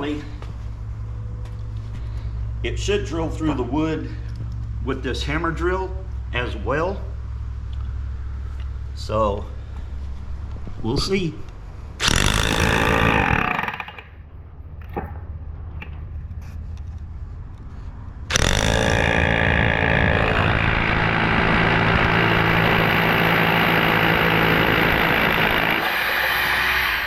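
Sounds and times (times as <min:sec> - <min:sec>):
hammer drill boring into concrete: 0:12.0 - 0:14.2, 0:18.3 - 0:27.0.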